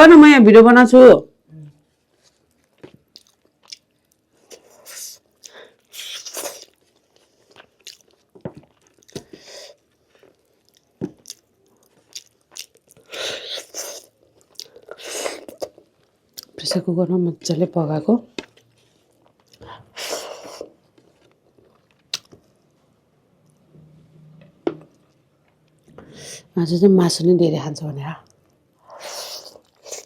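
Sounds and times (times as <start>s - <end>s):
wet mouth clicks and smacks: 22.1s - 22.3s.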